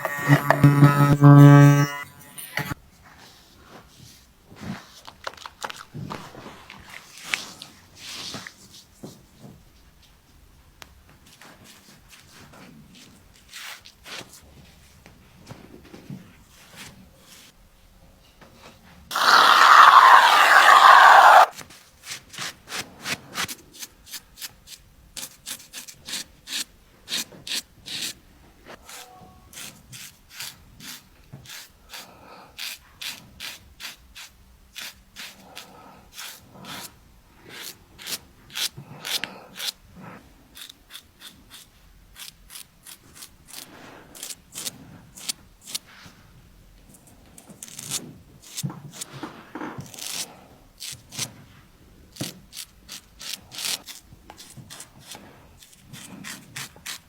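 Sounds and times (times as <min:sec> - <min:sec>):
razor scraping stubble: 0:00.0 - 0:02.8, 0:19.1 - 0:21.5.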